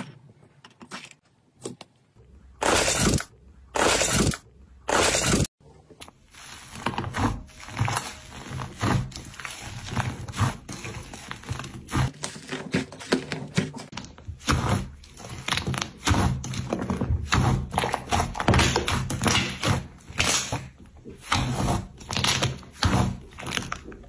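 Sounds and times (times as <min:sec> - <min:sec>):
slime squishing by hand: 0:05.6 - 0:24.0.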